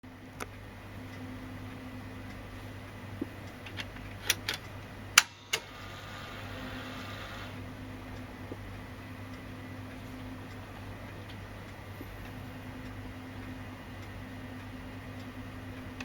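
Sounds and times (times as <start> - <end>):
faint mechanical whirring: 0.0 - 16.0
steady low hum: 0.0 - 16.0
tape deck mechanism clicking: 3.5 - 5.8.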